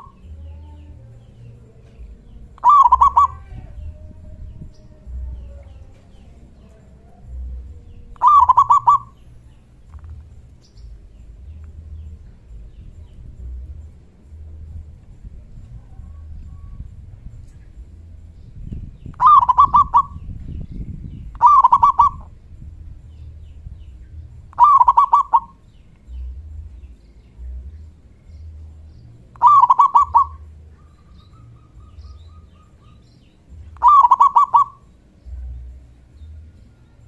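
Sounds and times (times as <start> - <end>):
dove cooing: 1.9 - 4.1, 8.1 - 9.2, 19.1 - 20.2, 21.3 - 22.3, 24.5 - 25.6, 29.4 - 33.1, 33.7 - 34.9.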